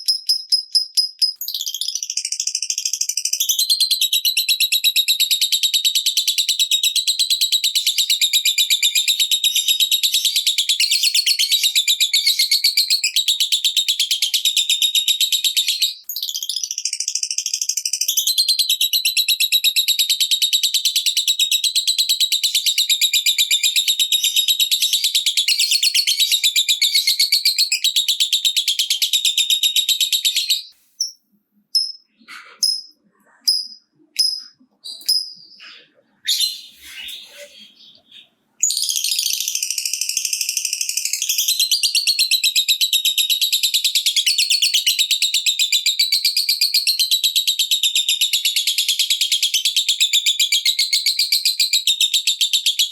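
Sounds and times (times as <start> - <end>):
lovebird rapid chirping chatter: 0.0 - 52.8
single bird chirps and calls: 22.4 - 45.4.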